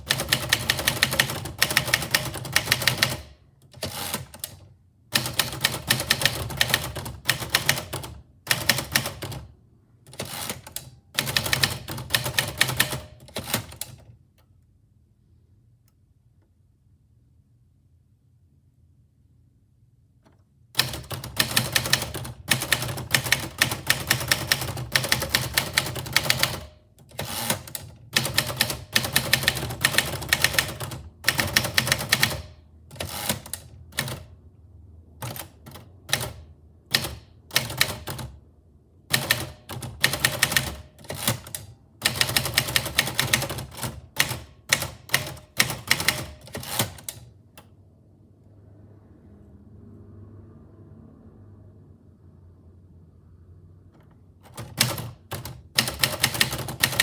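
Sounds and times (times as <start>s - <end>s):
manual typewriter key strikes: 0.0s - 4.6s, 5.2s - 9.5s, 10.1s - 14.1s, 20.8s - 34.3s, 35.2s - 38.4s, 39.1s - 47.3s, 54.4s - 57.0s.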